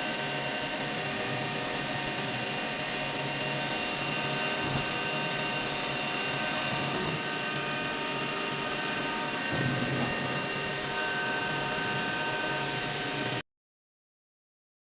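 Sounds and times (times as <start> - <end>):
milling machine whine: 0.0 - 13.4.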